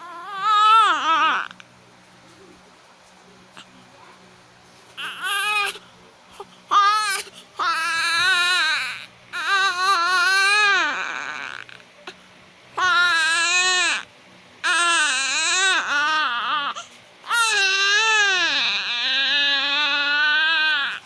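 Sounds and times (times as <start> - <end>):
baby crying: 0.0 - 1.5, 5.0 - 5.8, 6.4 - 11.8, 12.8 - 14.0, 14.6 - 21.0.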